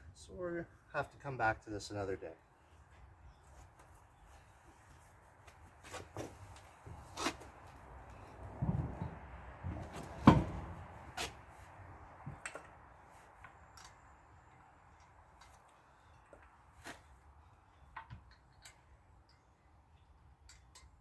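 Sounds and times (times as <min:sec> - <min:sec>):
wheel clunking and knocking: 0:08.1 - 0:11.2
heavy thud: 0:08.6 - 0:10.8.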